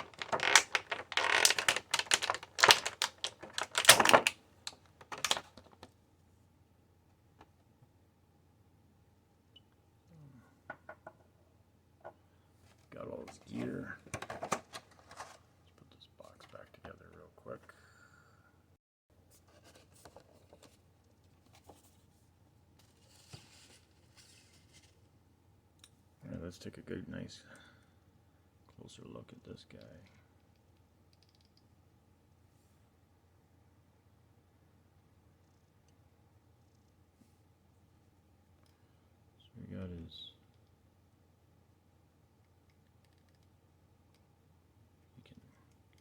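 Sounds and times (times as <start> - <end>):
plastic and cardboard packaging rustling: 0.0 - 5.9, 13.3 - 15.5.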